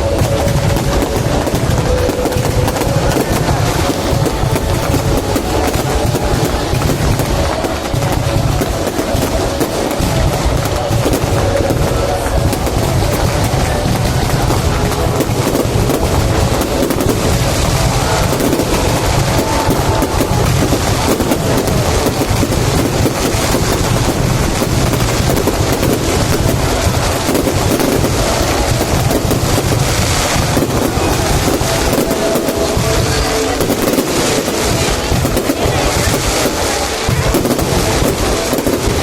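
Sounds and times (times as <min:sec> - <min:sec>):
fireworks bursting: 0:00.0 - 0:39.0.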